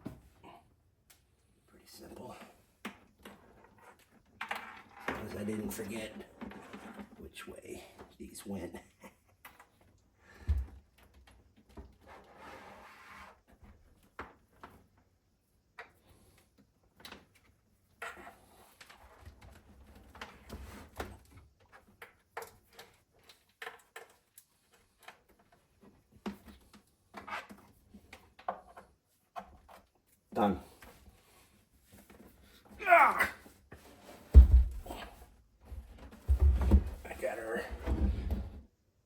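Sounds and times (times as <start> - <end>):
low thump: 34.3 - 35.0.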